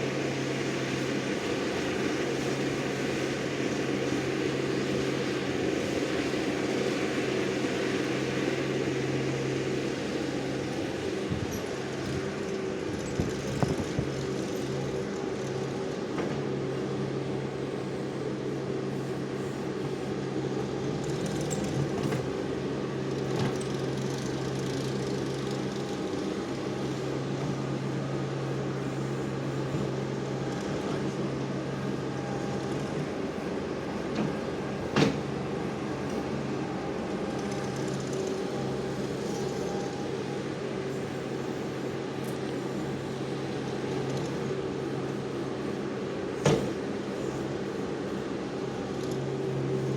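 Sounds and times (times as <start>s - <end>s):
loader engine running: 0.0s - 49.9s.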